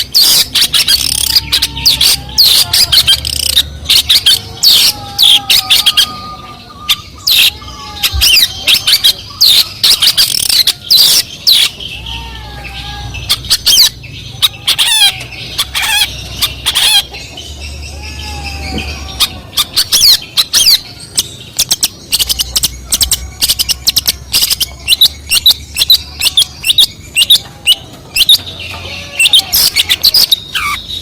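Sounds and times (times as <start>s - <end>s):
bird singing chirps and trills: 0.0s - 31.0s.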